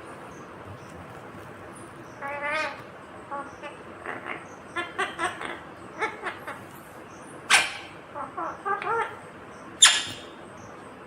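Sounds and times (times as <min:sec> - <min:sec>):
parrot squawk: 0:02.2 - 0:06.6, 0:07.5 - 0:09.2, 0:09.8 - 0:10.3
parrot chattering: 0:02.2 - 0:06.7, 0:07.4 - 0:09.2, 0:09.8 - 0:10.4.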